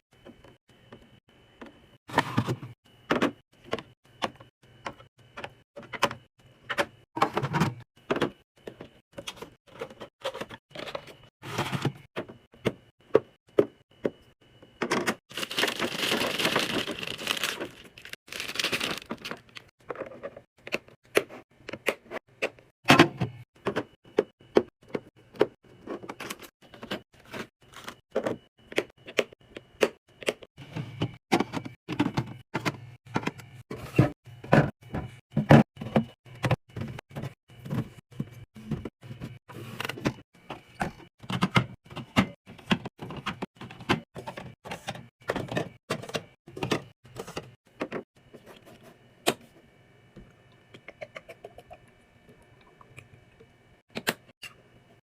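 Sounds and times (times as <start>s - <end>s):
drinks and snacks handled: 15.3s - 20.4s.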